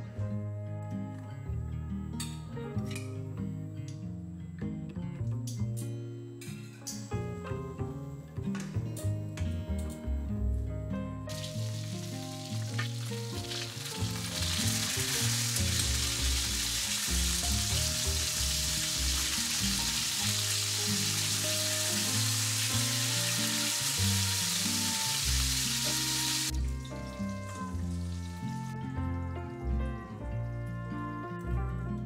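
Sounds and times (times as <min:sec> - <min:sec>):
food sizzling in a pan: 0:11.3 - 0:27.3.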